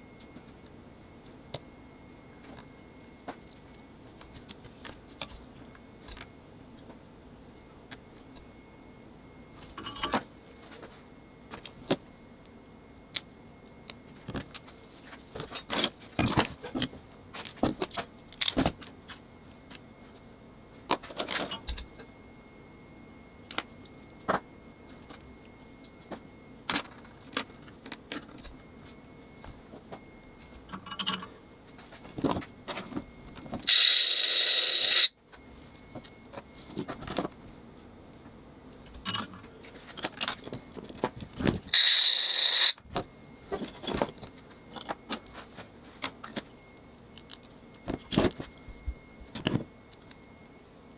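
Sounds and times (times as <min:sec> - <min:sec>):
loud high-toned buzzing: 0:33.7 - 0:35.1, 0:41.7 - 0:42.8.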